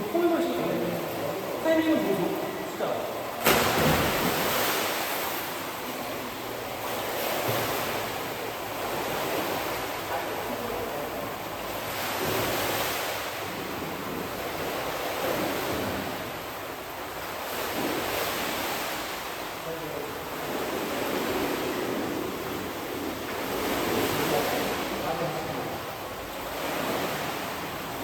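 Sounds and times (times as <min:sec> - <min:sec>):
water splashing in swimming pool: 0:00.0 - 0:19.6.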